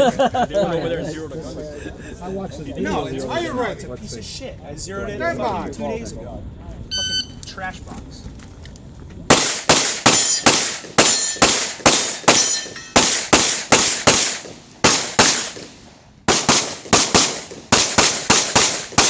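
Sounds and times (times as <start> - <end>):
pistol shots fired rapidly: 9.3 - 15.7, 16.3 - 19.0.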